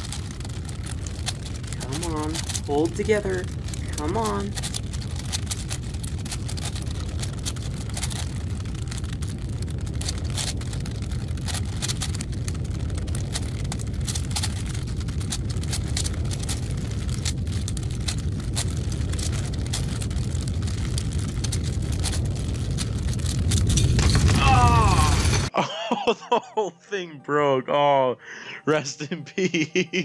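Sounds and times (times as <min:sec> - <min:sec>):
puzzle cube clacking: 0:00.0 - 0:09.1
steady low rumble: 0:00.0 - 0:25.8.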